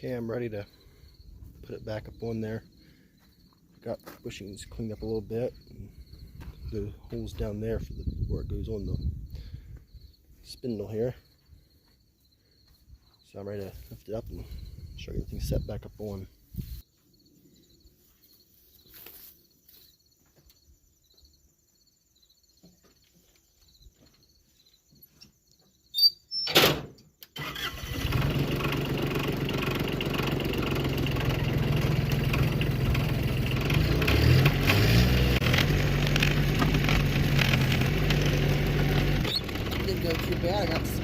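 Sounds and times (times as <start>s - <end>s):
faint crickets chirping: 0.0s - 28.0s
skid loader engine: 28.0s - 41.0s.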